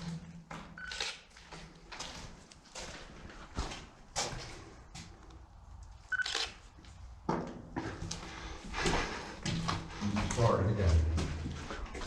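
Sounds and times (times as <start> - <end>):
footsteps scuffing on gritty floor: 0.0 - 5.2.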